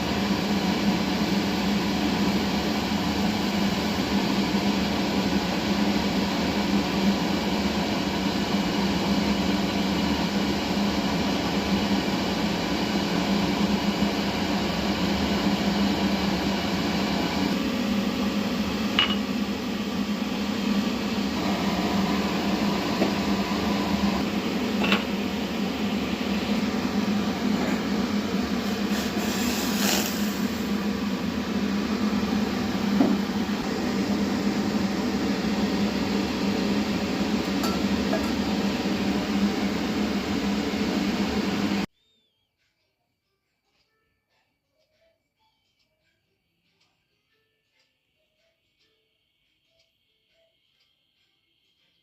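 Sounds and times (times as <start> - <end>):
appliance mechanical hum: 0.0 - 52.0
glass or dishes clinking: 19.0 - 19.3, 37.6 - 38.4.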